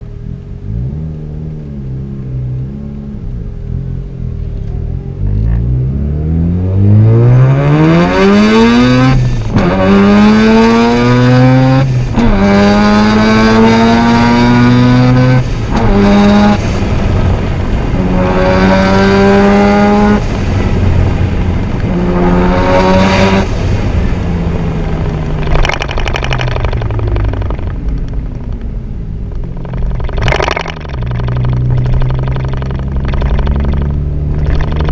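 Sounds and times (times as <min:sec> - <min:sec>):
rotary engine pulling hard: 0:25.4 - 0:28.8, 0:29.4 - 0:34.9.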